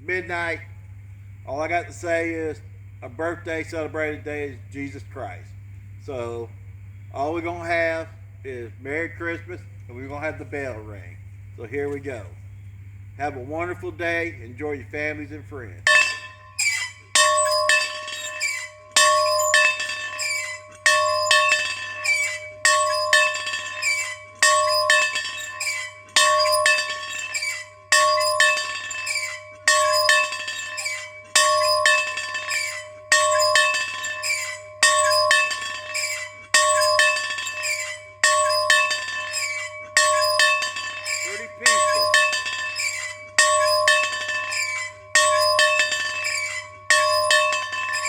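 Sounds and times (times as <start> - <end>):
bell ringing steadily: 15.9 - 48.0.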